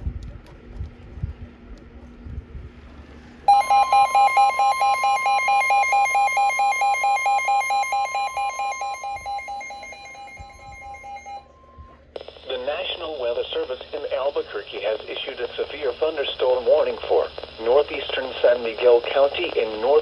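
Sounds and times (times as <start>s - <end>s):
pulsing low alert tone: 3.5s - 11.6s
steady high alert tone: 3.5s - 11.7s.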